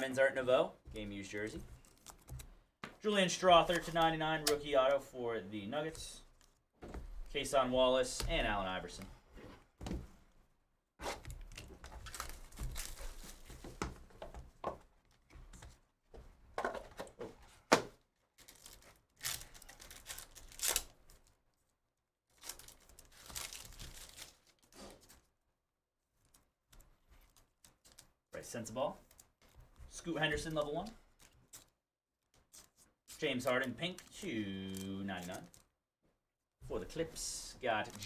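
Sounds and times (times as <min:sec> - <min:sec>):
wrappers tearing and crinkling: 0:01.8 - 0:02.4, 0:11.5 - 0:13.6, 0:18.4 - 0:21.3, 0:22.3 - 0:25.2, 0:32.4 - 0:35.6.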